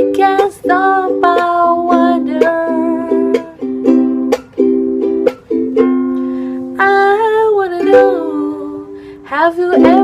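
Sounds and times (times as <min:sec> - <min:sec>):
person singing: 0:00.0 - 0:04.4, 0:06.1 - 0:10.0
strummed ukulele: 0:00.0 - 0:10.0.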